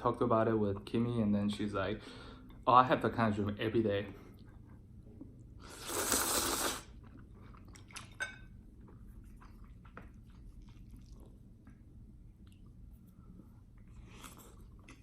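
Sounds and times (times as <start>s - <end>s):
person chewing food: 5.2s - 13.1s, 13.7s - 15.0s.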